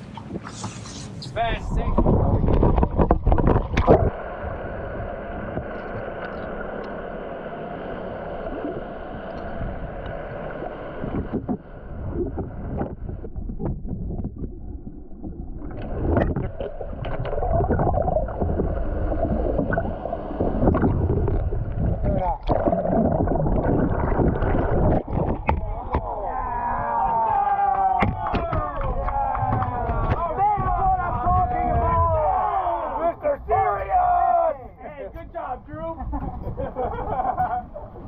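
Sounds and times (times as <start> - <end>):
wind on microphone: 0.0 - 4.7, 11.0 - 32.2
rushing water: 1.6 - 30.3
boat motor: 3.7 - 34.1.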